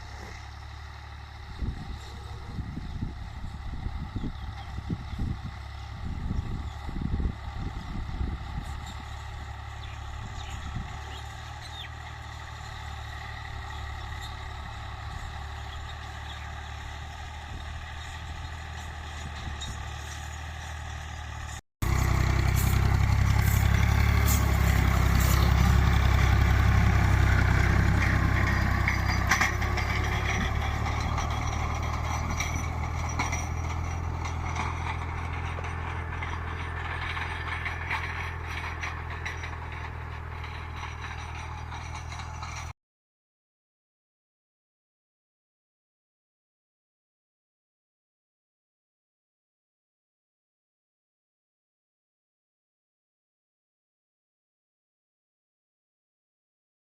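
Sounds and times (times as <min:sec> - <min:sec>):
tractor engine running: 0:00.0 - 0:42.7.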